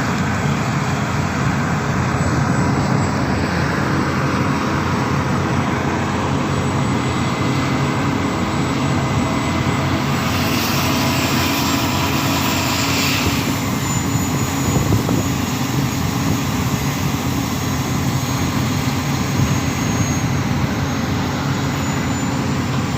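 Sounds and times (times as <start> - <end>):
heavy diesel machinery droning: 0.0 - 22.9
hiss: 9.9 - 14.6.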